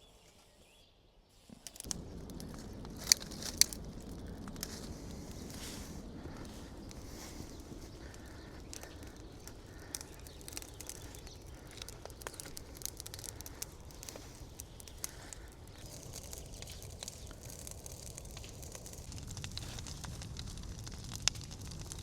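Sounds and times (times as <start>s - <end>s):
fire snaps and pops: 1.5s - 22.0s
bonfire crackling: 1.6s - 22.0s
low steady fire rumble: 1.7s - 22.0s.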